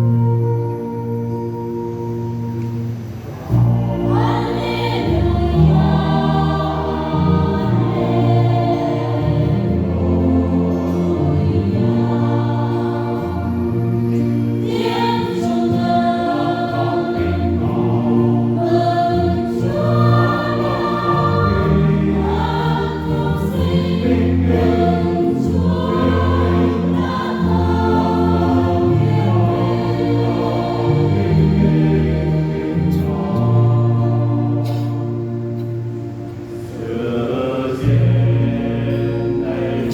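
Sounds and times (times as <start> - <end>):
choir singing a hymn: 2.2 - 39.9.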